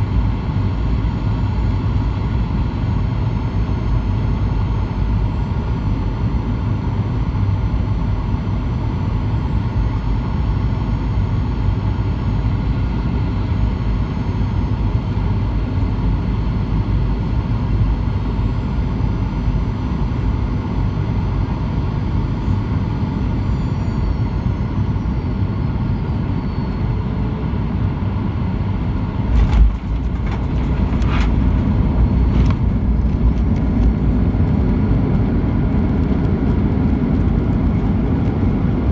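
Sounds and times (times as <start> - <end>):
jet engine roar and whine: 0.0 - 38.9
wheels touching down thump: 29.2 - 33.9.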